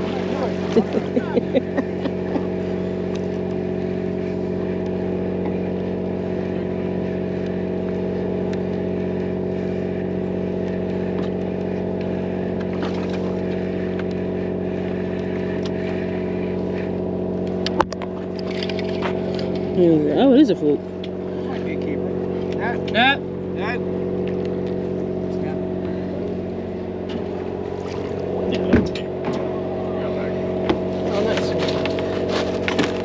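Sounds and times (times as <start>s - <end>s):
boat engine humming: 0.0s - 33.0s.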